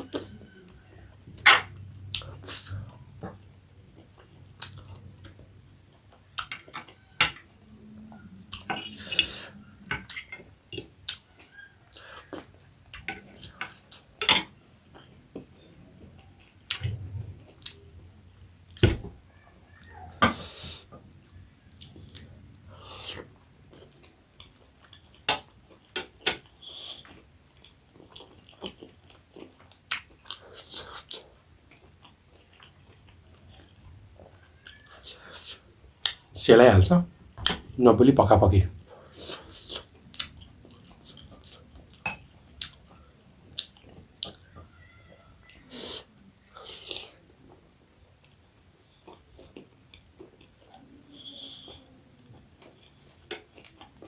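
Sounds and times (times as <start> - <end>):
wet chewing: 18.7 - 36.4, 38.8 - 54.0.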